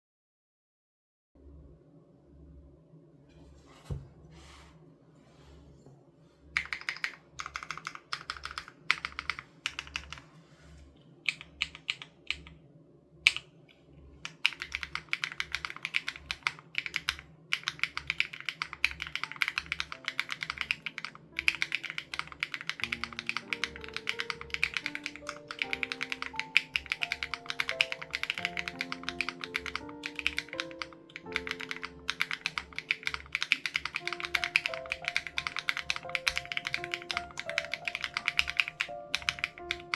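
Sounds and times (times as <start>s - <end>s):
mechanical keyboard typing: 6.6s - 10.3s, 11.3s - 12.6s, 13.2s - 13.5s, 14.2s - 39.9s
soft background music with beat: 22.6s - 33.0s, 33.9s - 39.9s.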